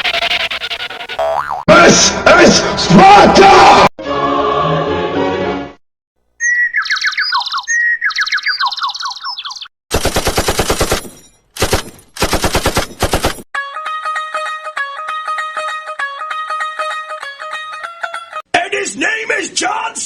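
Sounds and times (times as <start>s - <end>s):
machine-gun fire: 9.9s - 13.4s
plucked-string music: 13.6s - 18.4s.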